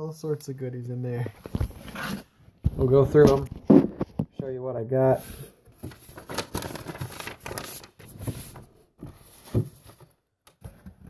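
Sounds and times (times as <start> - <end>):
packages rustling in cardboard box: 5.8 - 10.1.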